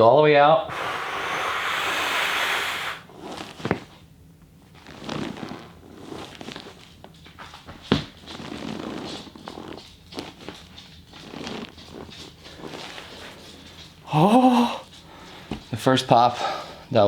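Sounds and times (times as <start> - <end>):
long exhale: 0.7 - 3.1
body shuffling on a ball: 4.6 - 14.0.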